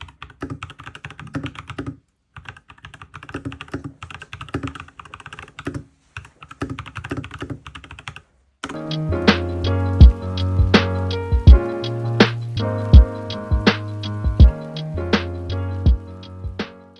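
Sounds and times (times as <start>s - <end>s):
mechanical keyboard typing: 0.0s - 9.0s.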